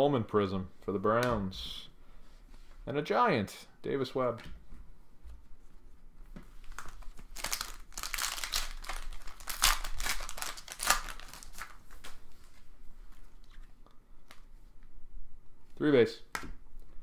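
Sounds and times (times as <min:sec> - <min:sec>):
wrapper crinkling: 0:06.6 - 0:12.6.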